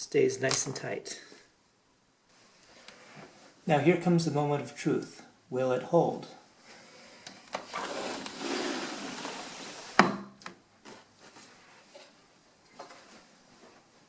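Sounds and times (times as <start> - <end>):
scraping and rubbing: 7.6 - 10.0.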